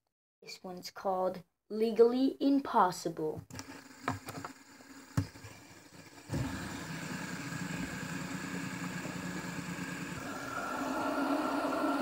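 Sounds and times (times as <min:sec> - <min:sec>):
fidget spinner whirring: 0:03.6 - 0:12.0.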